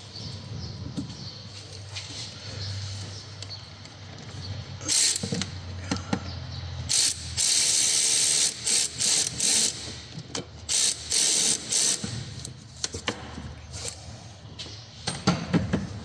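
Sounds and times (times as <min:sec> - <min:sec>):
ratchet wrench clicking: 0:04.9 - 0:05.5, 0:06.9 - 0:10.0, 0:10.7 - 0:12.6.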